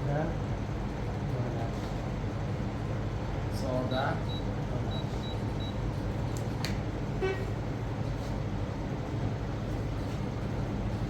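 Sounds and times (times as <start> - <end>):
vehicle horn toot: 7.2 - 7.5.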